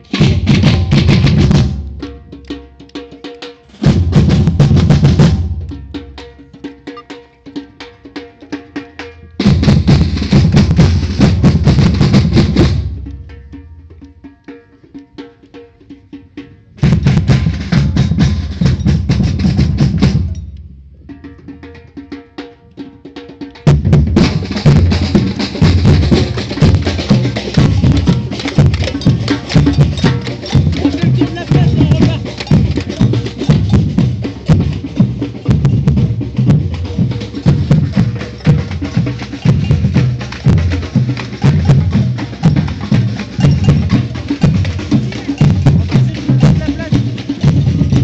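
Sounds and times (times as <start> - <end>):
deep bass drums: 0.0 - 2.3, 3.8 - 6.2, 9.4 - 13.8, 16.4 - 21.2, 23.7 - 48.0
samba percussion group playing: 0.0 - 20.4, 21.1 - 48.0
wood block strikes: 25.9 - 34.7, 37.4 - 48.0.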